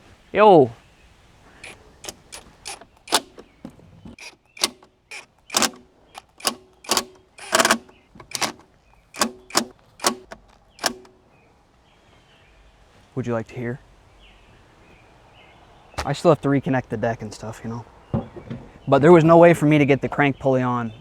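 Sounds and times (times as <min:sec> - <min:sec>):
sharp ringing clicks and knocks: 0:01.6 - 0:11.2.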